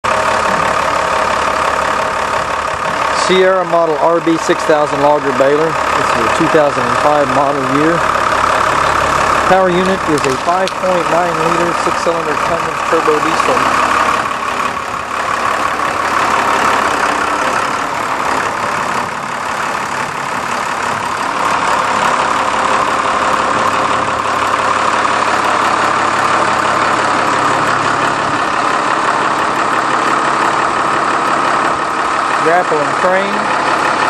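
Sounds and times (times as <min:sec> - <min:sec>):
diesel engine idling: 0:00.0 - 0:34.0.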